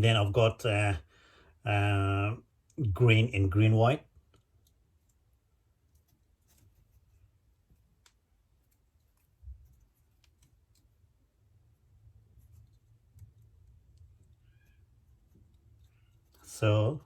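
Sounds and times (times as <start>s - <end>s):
faint clicks of handling cable: 4.2s - 11.2s.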